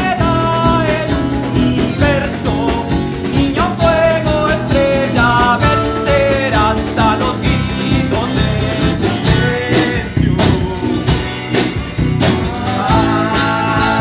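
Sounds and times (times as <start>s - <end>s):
acoustic guitar strumming: 0.0s - 14.0s
bass guitar: 0.0s - 14.0s
drum kit: 0.0s - 14.0s
tiple strumming: 0.0s - 14.0s.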